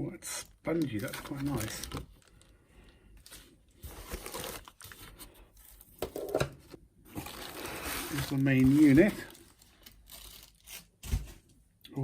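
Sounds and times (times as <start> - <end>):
packaging rustling and tearing: 0.4 - 2.6, 3.2 - 6.2, 7.1 - 11.5.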